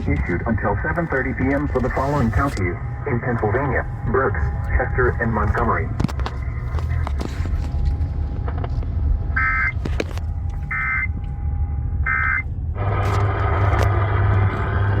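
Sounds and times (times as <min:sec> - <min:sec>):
radio static hiss: 0:00.0 - 0:07.6
low hum: 0:00.0 - 0:15.0.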